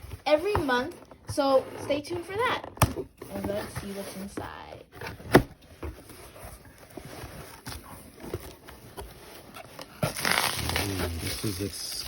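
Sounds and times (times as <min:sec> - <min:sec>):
packaging rustling: 0:03.2 - 0:12.0.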